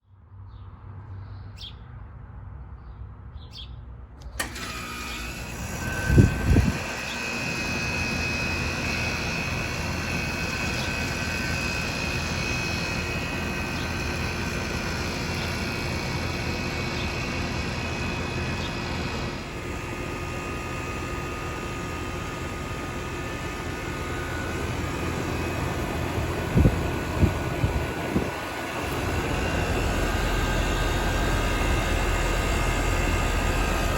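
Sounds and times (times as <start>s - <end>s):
compressor and fan running: 4.1s - 33.9s.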